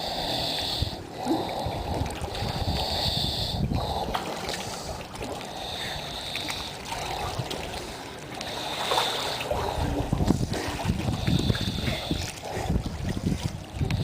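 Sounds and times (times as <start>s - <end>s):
pool water trickling and lapping: 0.0s - 14.0s.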